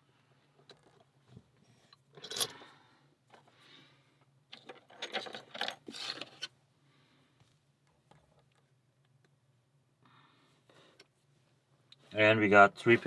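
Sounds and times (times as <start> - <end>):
metal clinks of lock-picking tools: 2.2 - 2.6.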